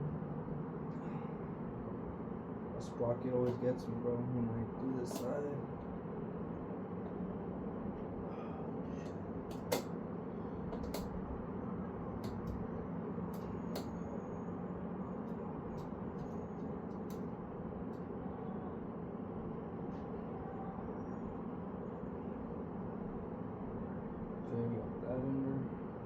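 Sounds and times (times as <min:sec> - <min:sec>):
steady background hum: 0:00.0 - 0:26.0
metal clicks of bicycle parts: 0:09.0 - 0:09.9, 0:10.7 - 0:11.1.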